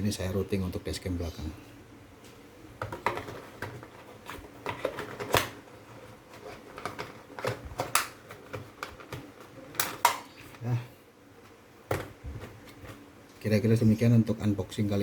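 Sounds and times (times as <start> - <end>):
plastic charger clicks and rustles: 2.8 - 5.7, 6.3 - 10.3.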